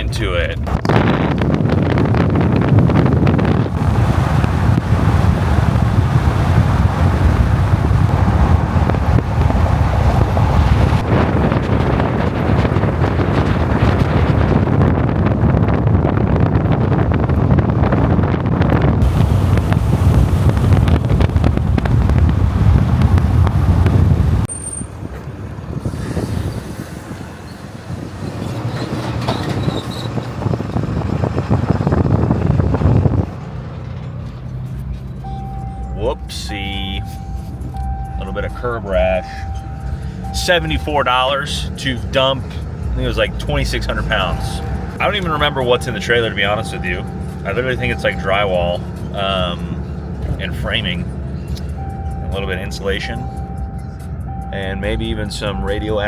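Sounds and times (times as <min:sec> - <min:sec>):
wind buffeting microphone: 0:00.0 - 0:52.2
truck road noise: 0:00.0 - 0:56.0
trailer clattering and knocking: 0:00.6 - 0:15.8, 0:19.0 - 0:36.4.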